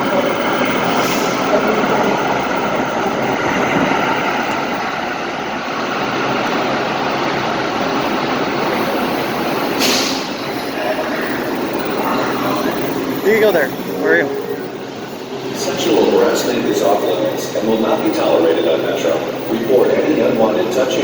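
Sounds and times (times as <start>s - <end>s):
train rumble and rail noise: 0.0s - 21.0s
brief hiss: 8.9s - 10.4s.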